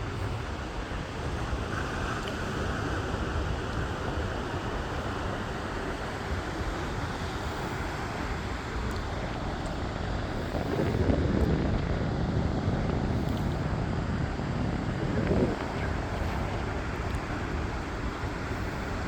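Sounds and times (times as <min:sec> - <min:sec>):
sea surf: 0:00.0 - 0:19.0
wind buffeting microphone: 0:00.0 - 0:19.0.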